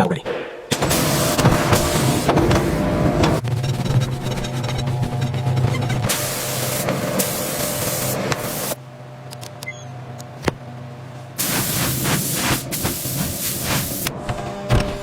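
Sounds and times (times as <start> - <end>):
loud hissing noise: 6.1 - 8.8, 11.4 - 14.1.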